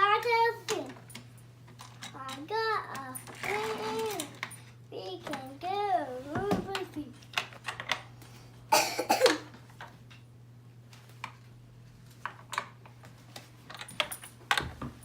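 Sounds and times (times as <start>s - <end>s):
person coughing: 8.7s - 9.5s.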